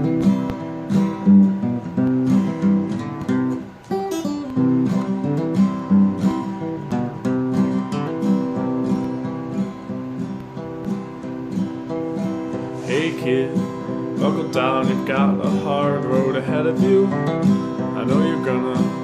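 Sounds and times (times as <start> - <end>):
acoustic guitar strumming chords: 0.0 - 19.0.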